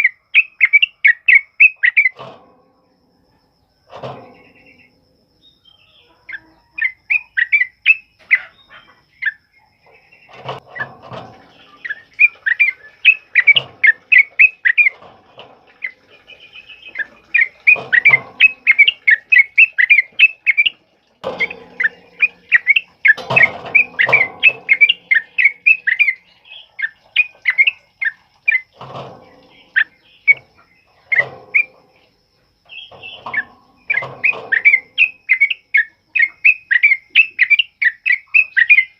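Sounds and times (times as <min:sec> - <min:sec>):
bulbul singing rapid chirps: 0:15.8 - 0:32.1.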